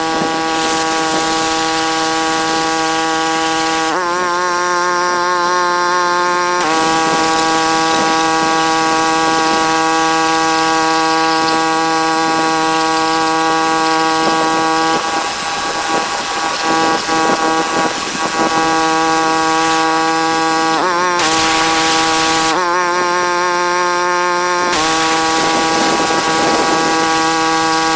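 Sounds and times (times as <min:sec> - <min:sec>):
spray hissing: 0:00.0 - 0:04.2, 0:06.4 - 0:22.6, 0:24.3 - 0:27.9
pressure washer engine hum: 0:00.0 - 0:27.9.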